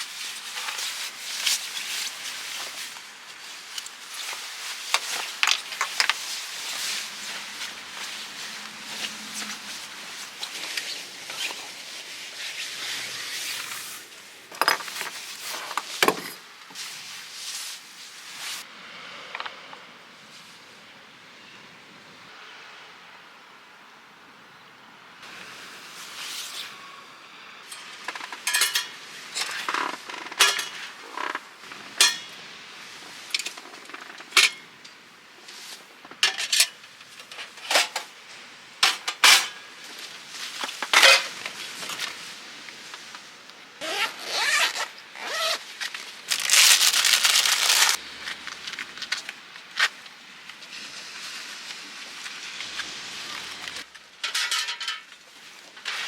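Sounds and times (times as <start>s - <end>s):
knocks clinks and rustles: 14.5s - 16.5s
zipper pull: 43.8s - 45.6s.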